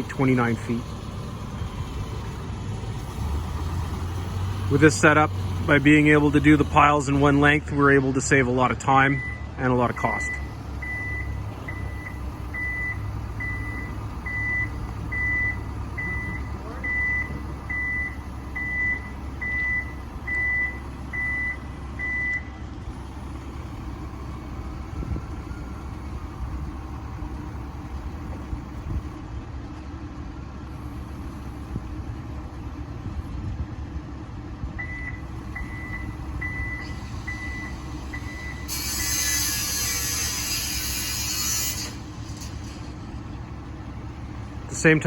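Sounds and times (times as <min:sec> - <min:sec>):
diesel machinery running: 0:00.0 - 0:45.0
reversing alarm beeping: 0:04.7 - 0:26.6, 0:34.8 - 0:42.0.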